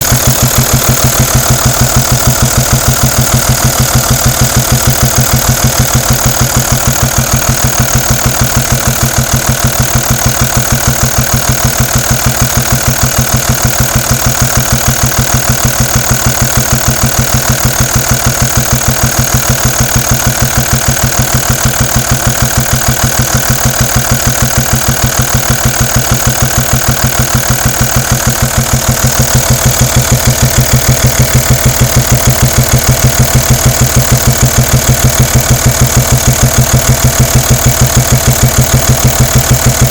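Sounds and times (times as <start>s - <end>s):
diesel engine idling: 0.0s - 39.9s.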